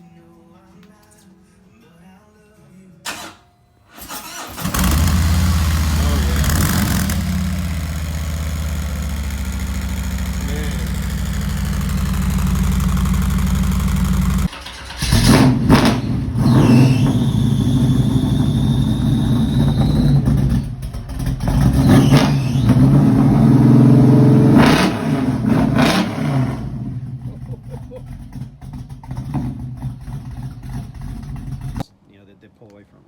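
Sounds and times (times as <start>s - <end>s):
car engine idling: 3.9s - 16.4s, 17.0s - 24.6s, 26.6s - 31.8s
car engine revving and accelerating: 4.6s - 27.3s.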